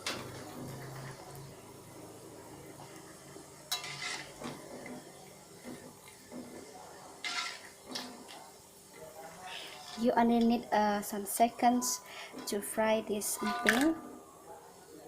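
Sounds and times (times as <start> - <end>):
faint frying sizzle: 0.0 - 13.6
metal spoon clinking on a pan: 3.7 - 4.3.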